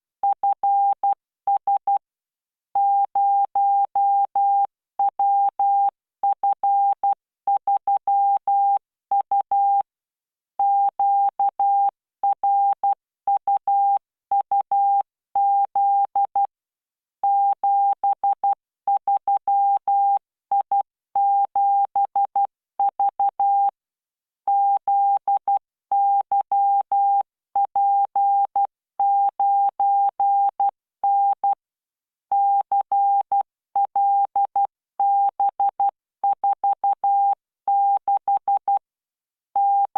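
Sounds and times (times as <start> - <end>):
morse code beeps: 39.6 - 39.9.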